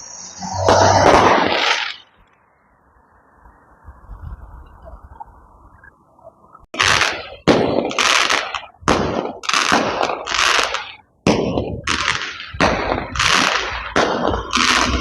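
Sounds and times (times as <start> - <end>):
fireworks bangs with crackling hiss: 0.0 - 2.2, 6.7 - 15.0.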